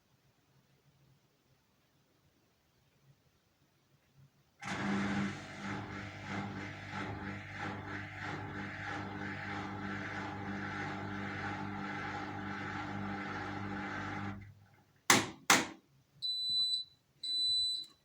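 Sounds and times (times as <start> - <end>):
washing machine running: 4.6 - 14.6.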